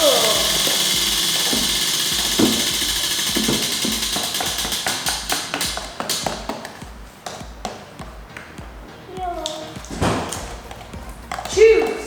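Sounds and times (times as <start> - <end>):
prize wheel pointer ticking: 0.0 - 6.0
background music: 0.0 - 12.0.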